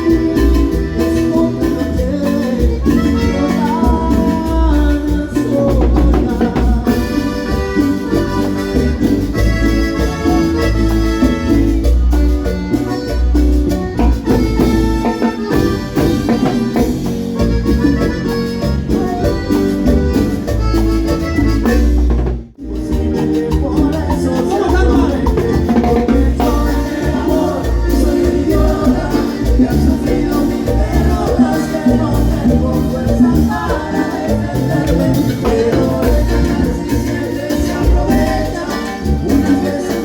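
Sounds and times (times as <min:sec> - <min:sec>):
live cumbia band instrumental: 0:00.0 - 0:40.0.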